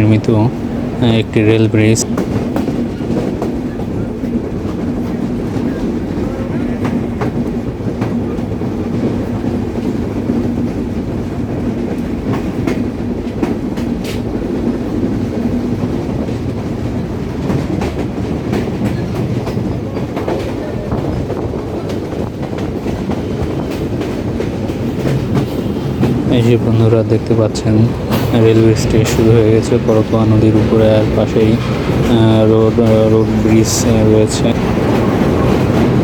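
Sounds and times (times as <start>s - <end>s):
train rumble: 0.0s - 36.0s
wheels clicking over rail joints: 0.2s - 36.0s.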